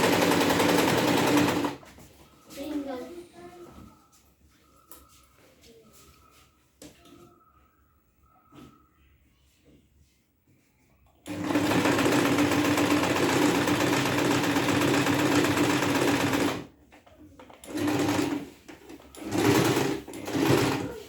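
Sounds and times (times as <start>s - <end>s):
sewing machine running: 0.0s - 1.8s, 11.2s - 16.7s, 17.6s - 18.5s, 19.1s - 21.0s.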